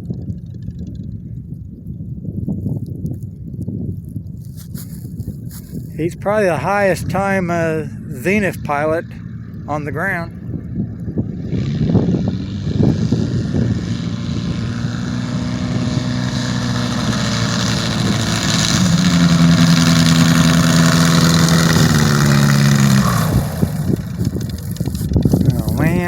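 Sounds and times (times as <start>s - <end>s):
light aircraft flying past: 10.3s - 26.0s.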